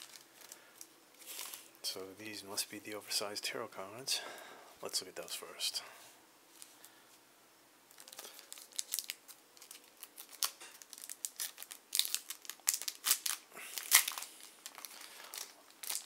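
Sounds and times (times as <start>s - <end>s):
plastic wrapping crinkling and tearing: 0.0s - 1.8s, 7.9s - 16.0s.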